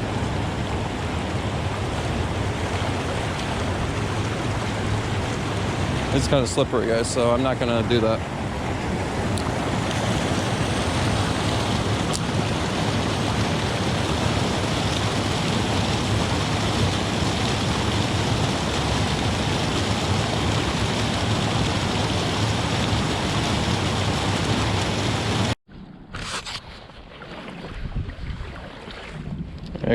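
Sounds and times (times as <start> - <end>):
water rushing over waterfall: 0.0 - 25.6.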